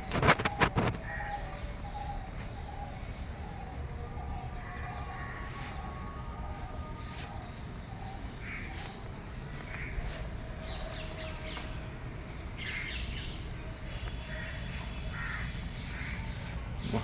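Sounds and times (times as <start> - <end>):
bird calling: 12.6 - 17.0.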